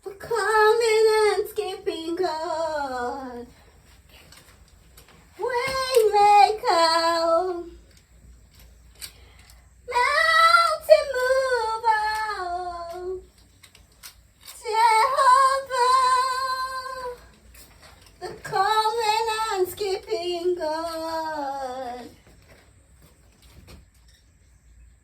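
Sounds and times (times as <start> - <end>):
high voice singing: 0.0 - 3.6, 5.4 - 7.8, 9.9 - 13.3, 14.6 - 17.3.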